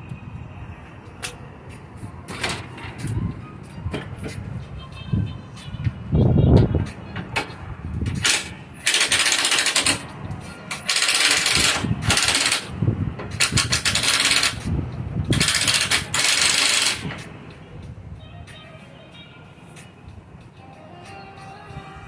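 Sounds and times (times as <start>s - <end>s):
harsh rattling mechanical noise: 6.1s - 17.5s.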